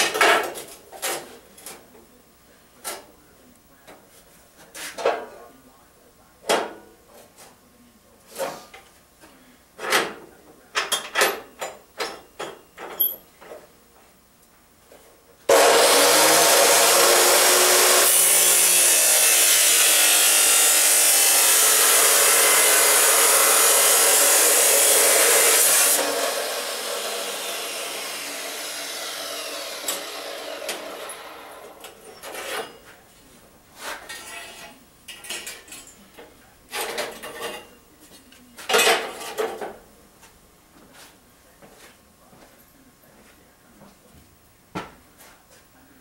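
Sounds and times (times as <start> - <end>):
chop saw cutting steel: 15.5 - 32.8.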